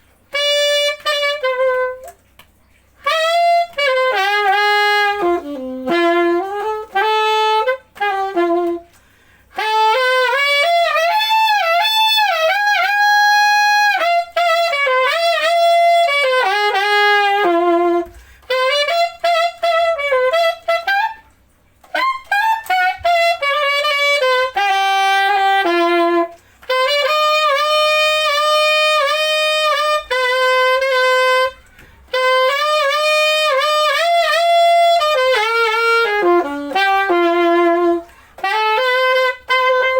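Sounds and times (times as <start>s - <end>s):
alto saxophone melody: 0.0s - 39.9s.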